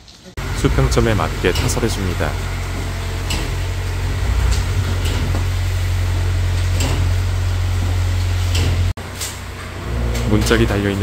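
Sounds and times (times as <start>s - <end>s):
low machine hum: 0.4s - 11.0s
faint scraping strokes: 4.0s - 5.9s.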